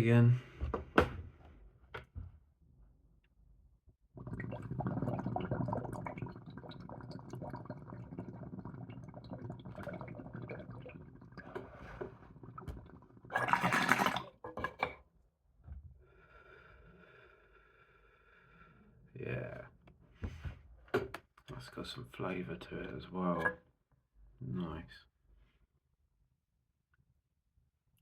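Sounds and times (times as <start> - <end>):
water bubbling in a pipe: 4.2 - 14.6.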